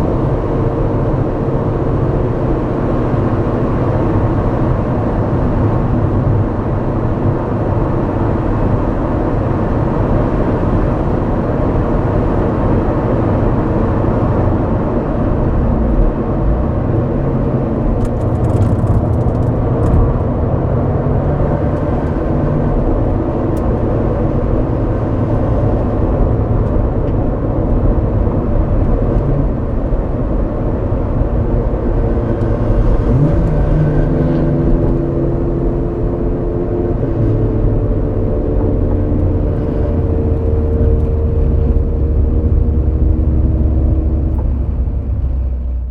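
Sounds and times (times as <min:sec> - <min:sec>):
car engine under load: 0:00.0 - 0:45.9.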